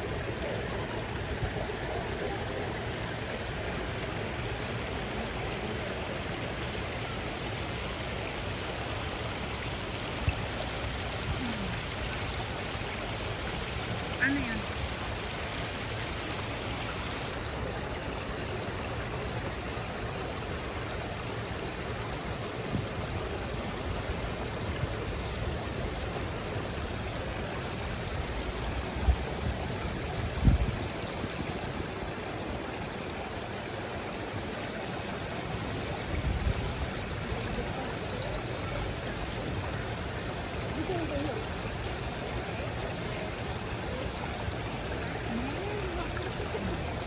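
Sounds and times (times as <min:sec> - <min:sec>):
high electronic beeps: 0:11.1 - 0:11.5, 0:12.1 - 0:12.3, 0:13.1 - 0:13.8, 0:37.0 - 0:37.2, 0:38.0 - 0:38.7.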